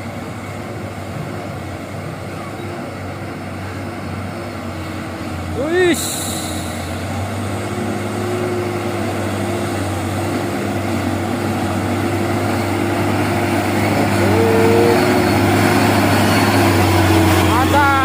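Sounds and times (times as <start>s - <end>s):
truck engine running: 0.0s - 18.0s
short higher tone: 14.0s - 17.6s.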